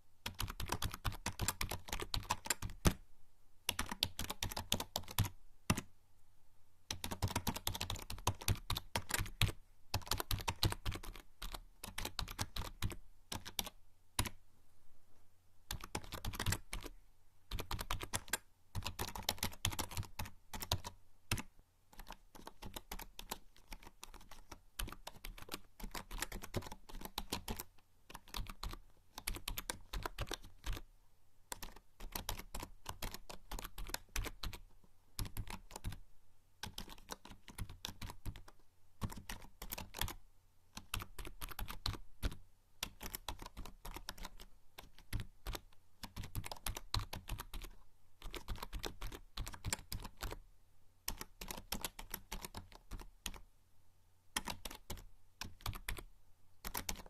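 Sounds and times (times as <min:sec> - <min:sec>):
keyboard typing clicks: 0:06.9 - 0:14.4, 0:54.4 - 0:56.0, 0:56.6 - 0:57.0.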